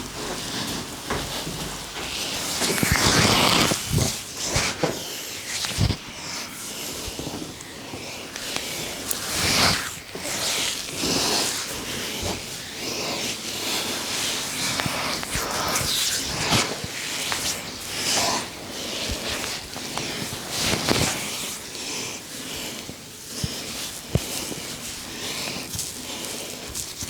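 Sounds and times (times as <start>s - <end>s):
hands rubbing oiled hair: 0.4s - 21.6s.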